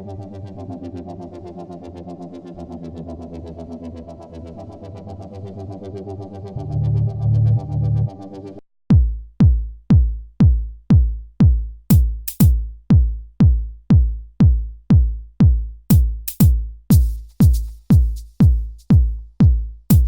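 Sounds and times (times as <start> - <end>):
kick drum beat: 8.9 - 20.0
clap or hi-hat hits: 11.9 - 12.6, 15.9 - 20.0.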